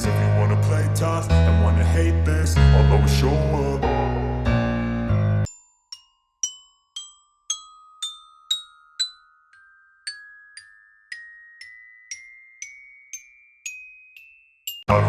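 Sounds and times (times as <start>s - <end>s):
glockenspiel-like mallet notes: 5.5s - 15.0s.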